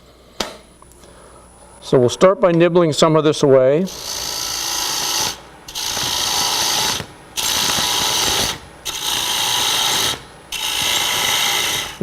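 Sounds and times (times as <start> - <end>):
lathe tool shaving wood: 3.9 - 12.0.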